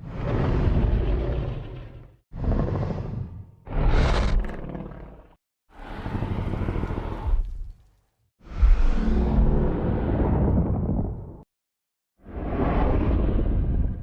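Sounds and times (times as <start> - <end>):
monster roars: 0.0 - 7.6.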